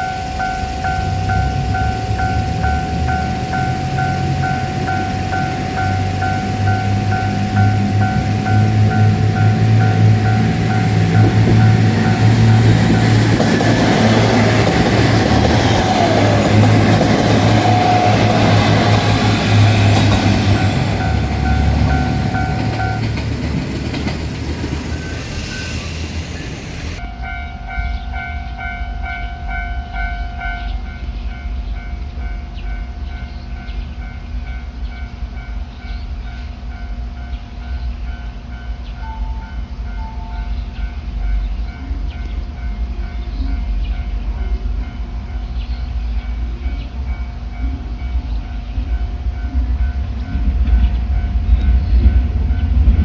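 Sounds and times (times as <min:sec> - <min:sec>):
level crossing bell ringing: 0:00.0 - 0:23.2
train running over crossing: 0:00.0 - 0:53.0.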